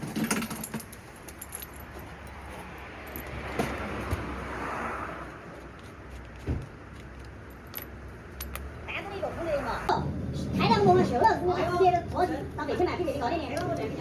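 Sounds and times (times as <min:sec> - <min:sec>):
metal tools clinking: 0:00.0 - 0:03.4, 0:07.1 - 0:08.8.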